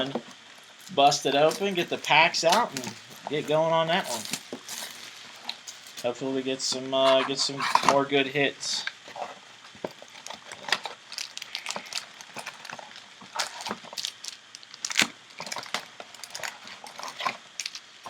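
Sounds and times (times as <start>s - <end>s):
card packs tearing: 0.0s - 6.1s, 9.9s - 18.0s
cardboard crinkling: 0.0s - 6.1s, 8.8s - 18.0s.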